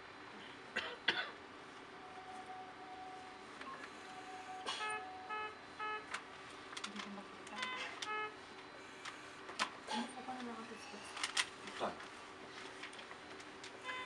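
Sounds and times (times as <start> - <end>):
short alarm beeps: 2.0 - 6.1, 7.6 - 9.1, 13.8 - 14.0
faint steady tone: 2.0 - 6.2.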